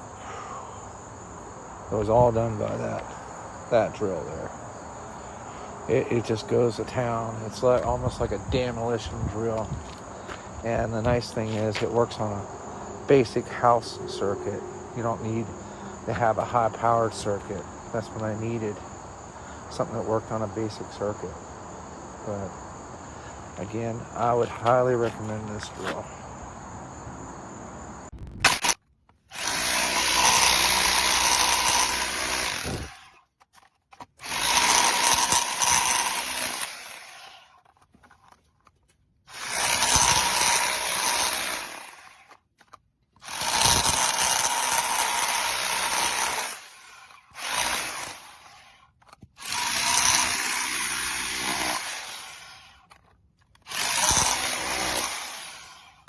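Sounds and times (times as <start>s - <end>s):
rotary hammer drill running: 28.5s - 38.2s, 39.3s - 56.0s.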